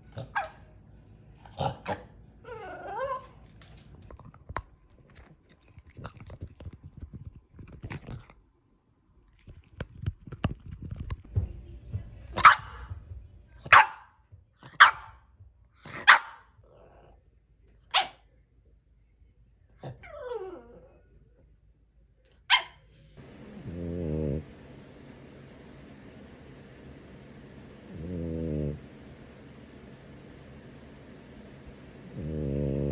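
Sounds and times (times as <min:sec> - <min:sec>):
dog barking: 0:12.4 - 0:12.9, 0:13.7 - 0:15.2, 0:15.9 - 0:16.5, 0:17.9 - 0:18.2, 0:22.5 - 0:22.8.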